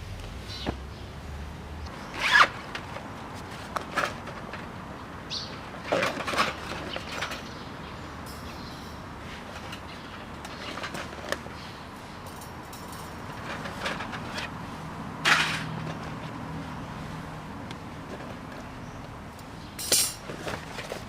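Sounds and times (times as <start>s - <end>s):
road traffic: 0.0s - 21.0s
handling scrapes and rustles: 2.1s - 4.7s, 5.7s - 7.6s, 8.9s - 16.5s, 17.9s - 18.8s, 19.8s - 21.0s.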